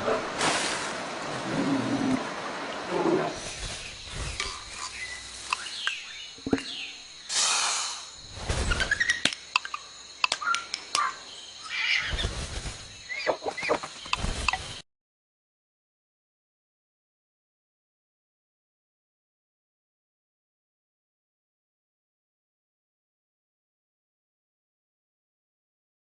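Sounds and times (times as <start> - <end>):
sharp clicks: 9.1 - 11.1.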